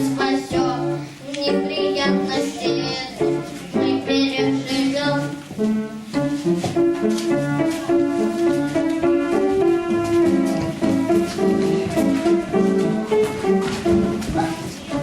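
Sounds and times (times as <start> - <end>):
children singing: 0.0 - 5.4, 10.4 - 15.0
instrumental accompaniment: 0.0 - 15.0.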